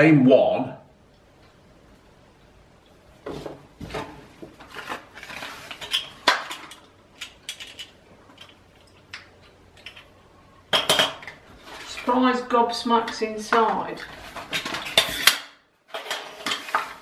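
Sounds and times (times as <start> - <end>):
plastic toy parts clicking: 5.9 - 9.2.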